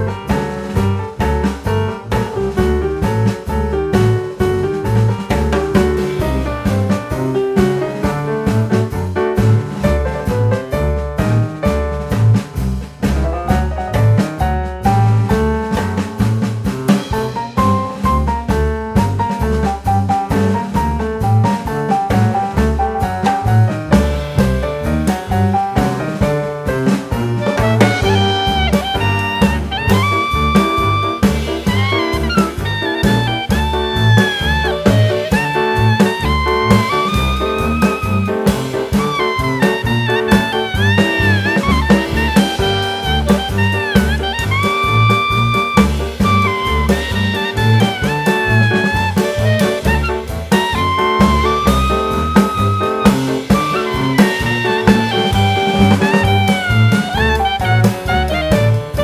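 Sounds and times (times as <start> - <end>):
jazz music with steady beat: 0.0 - 59.0
saxophone-like horn melody: 27.2 - 59.0.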